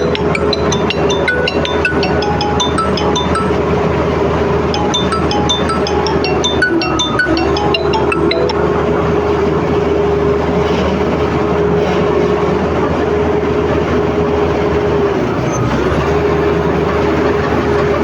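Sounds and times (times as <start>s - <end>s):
bulldozer diesel engine under load: 8.6s - 18.0s.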